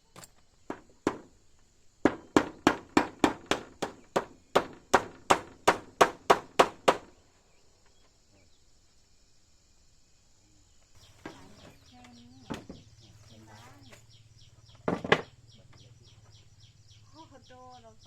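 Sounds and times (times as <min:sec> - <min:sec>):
faint high hiss: 0:07.1 - 0:14.4.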